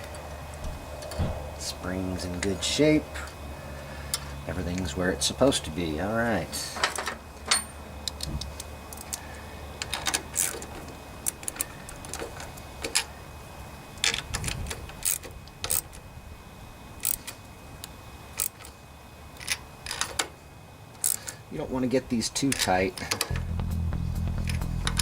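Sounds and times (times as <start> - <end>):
metallic clicks of hand tools: 17.0 - 17.4, 18.4 - 18.7.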